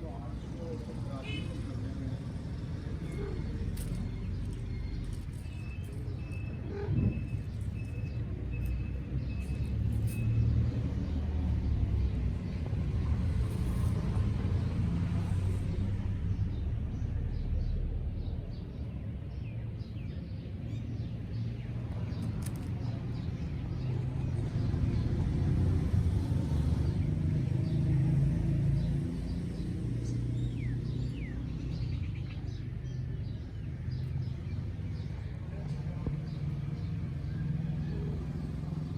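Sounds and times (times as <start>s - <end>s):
low engine rumble: 0.0s - 38.9s
bird chirps: 3.0s - 10.5s.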